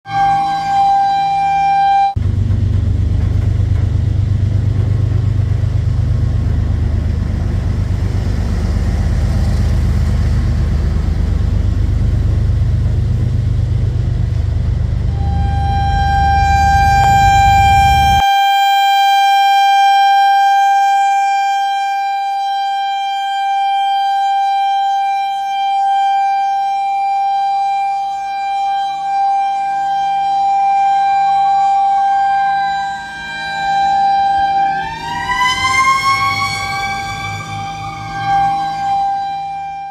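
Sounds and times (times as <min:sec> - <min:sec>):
steady siren: 0:00.0 - 0:39.9
wavering siren: 0:00.0 - 0:39.9
low rumble: 0:02.1 - 0:18.2.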